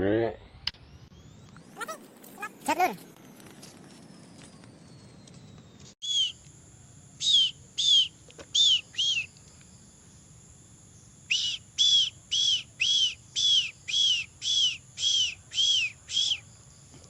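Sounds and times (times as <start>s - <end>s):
bird whistled calls: 5.0s - 6.4s, 7.2s - 9.4s, 11.3s - 16.5s.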